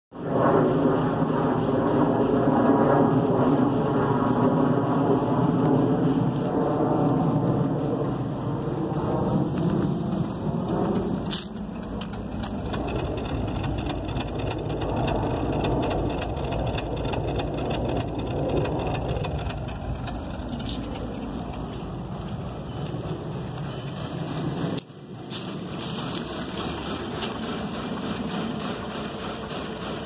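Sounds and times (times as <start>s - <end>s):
car engine idling roughly: 9.5s - 30.0s
sharp engine ticks: 10.2s - 24.9s.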